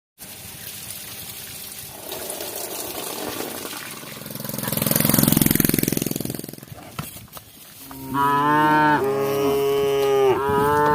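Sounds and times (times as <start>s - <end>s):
cow mooing: 7.8s - 10.9s.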